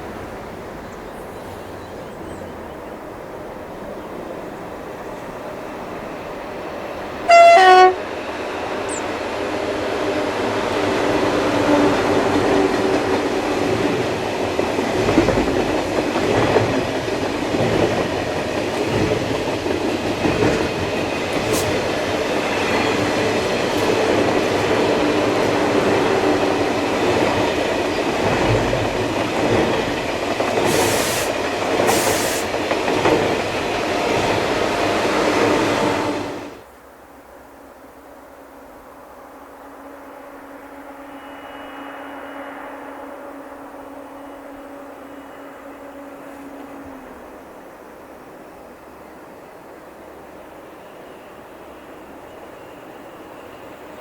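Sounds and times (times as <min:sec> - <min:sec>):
train wheels rumbling on rails: 0:00.0 - 0:36.7
short high hissing bursts: 0:30.7 - 0:32.5.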